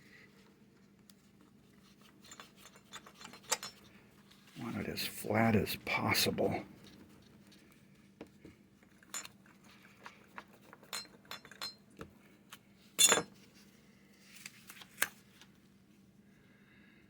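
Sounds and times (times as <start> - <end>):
tools tapping and clinking: 2.2 - 3.9, 9.0 - 9.4, 10.3 - 12.1, 13.0 - 13.3
ringing metal clink: 13.0 - 13.3.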